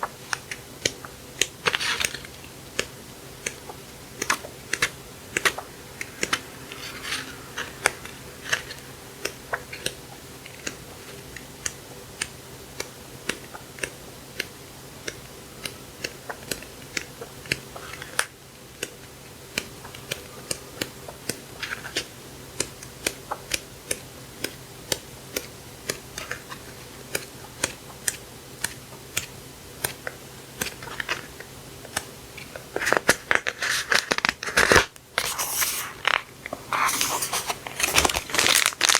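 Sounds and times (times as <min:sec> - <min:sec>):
faint steady hum: 0:00.0 - 0:38.9
paper rustling: 0:06.2 - 0:08.8, 0:32.4 - 0:38.9.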